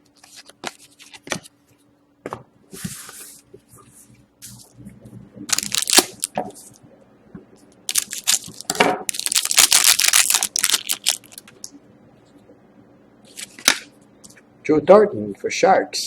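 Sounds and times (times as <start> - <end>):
foil wrapper crinkling: 5.5 - 6.4, 7.8 - 11.7.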